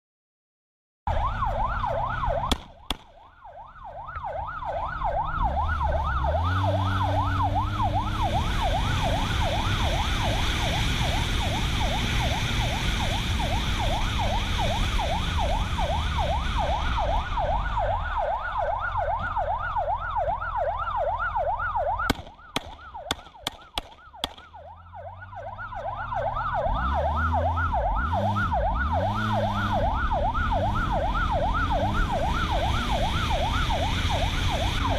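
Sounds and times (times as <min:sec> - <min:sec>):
police siren yelping: 0:01.1 - 0:34.9
car engine accelerating: 0:04.9 - 0:16.7, 0:24.9 - 0:34.9
sharp clicks: 0:22.1 - 0:24.5.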